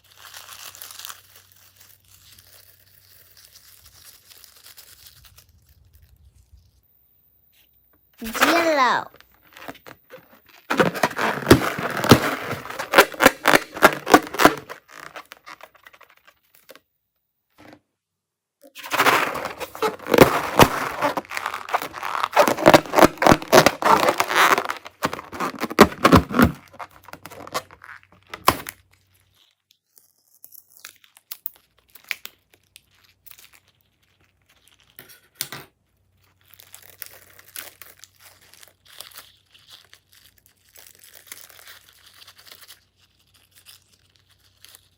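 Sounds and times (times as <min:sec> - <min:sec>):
slime squishing and crackling: 0:00.0 - 0:06.8, 0:08.2 - 0:16.7, 0:18.8 - 0:35.0, 0:36.0 - 0:44.9.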